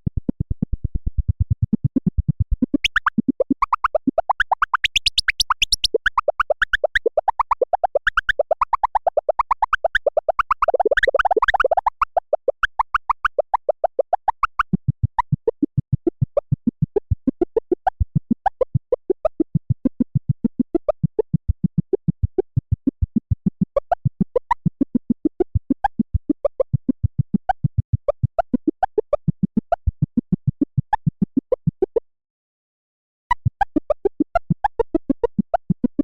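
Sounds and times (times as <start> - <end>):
synthesizer blips: 2.7 - 14.6.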